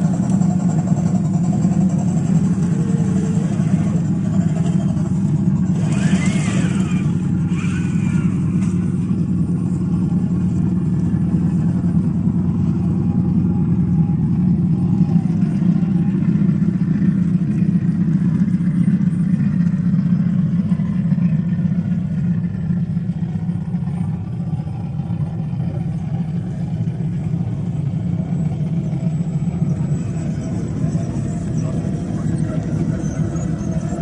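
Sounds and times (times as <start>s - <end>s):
vehicle engine rumbling: 0.0s - 34.0s.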